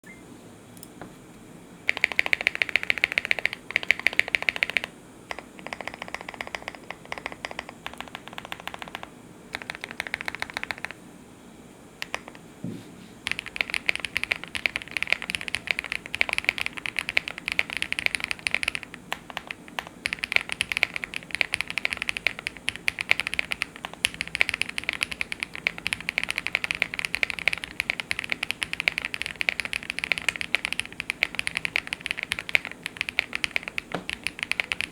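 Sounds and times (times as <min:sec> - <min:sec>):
mechanical keyboard typing: 0:01.9 - 0:11.0, 0:12.0 - 0:12.4, 0:13.2 - 0:34.9.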